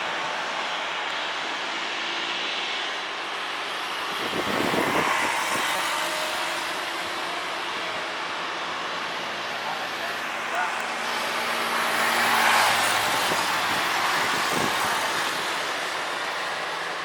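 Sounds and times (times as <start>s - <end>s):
jet airliner engine roar: 0.0s - 17.0s.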